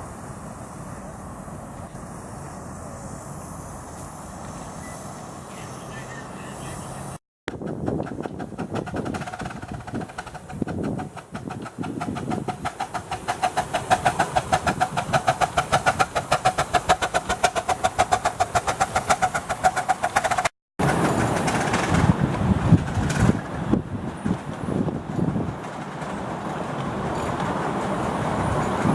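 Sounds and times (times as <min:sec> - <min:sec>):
steam hiss and rumble: 0:00.0 - 0:28.9
steam locomotive exhaust beats: 0:00.0 - 0:28.9.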